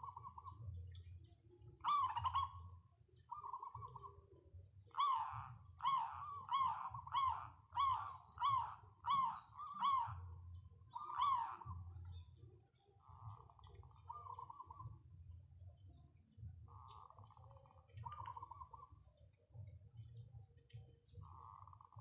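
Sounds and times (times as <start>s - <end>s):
dove cooing: 0.0s - 0.6s, 1.8s - 4.2s, 4.9s - 12.1s, 13.0s - 15.0s, 18.0s - 18.9s.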